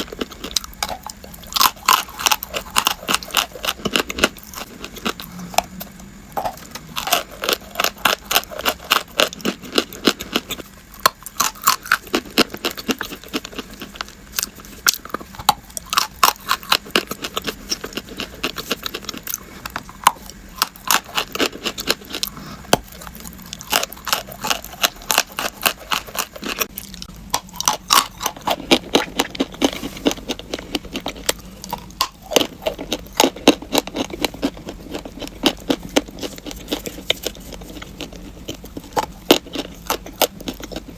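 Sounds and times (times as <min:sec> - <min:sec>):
chalk being chewed: 0:27.8 - 0:40.9.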